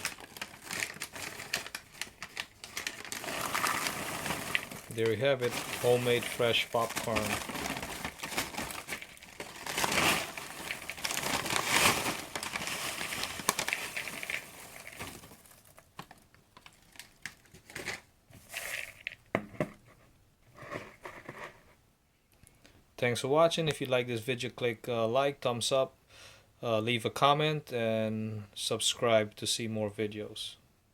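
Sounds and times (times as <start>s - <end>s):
paper bag crinkling: 0.0s - 19.1s.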